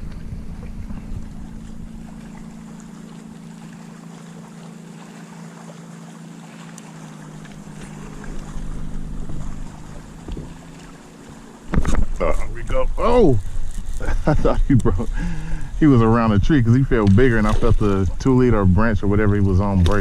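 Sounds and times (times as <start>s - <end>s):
wind buffeting microphone: 0.0s - 3.3s, 7.6s - 20.0s
boat motor humming: 0.0s - 20.0s.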